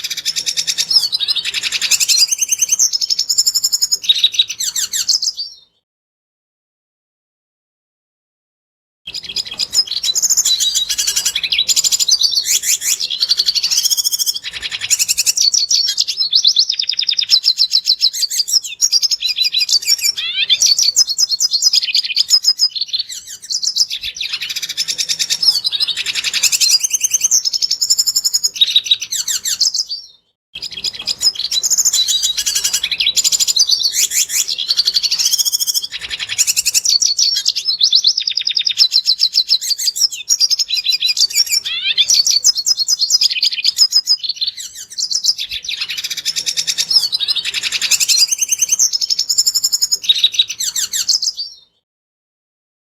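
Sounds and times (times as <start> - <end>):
bird twittering song: 0.0 - 5.8, 9.1 - 51.8.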